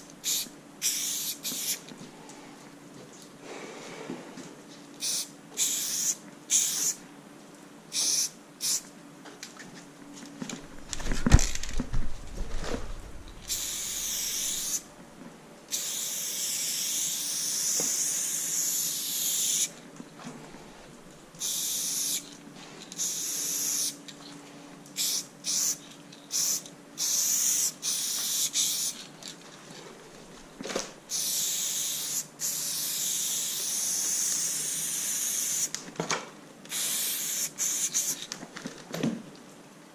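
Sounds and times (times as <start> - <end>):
spray paint can hissing: 0.2 - 1.8, 5.0 - 7.0, 7.9 - 8.9, 13.4 - 14.8, 15.7 - 19.7, 21.4 - 22.3, 23.0 - 24.0, 25.0 - 29.0, 31.1 - 35.8, 36.7 - 38.3.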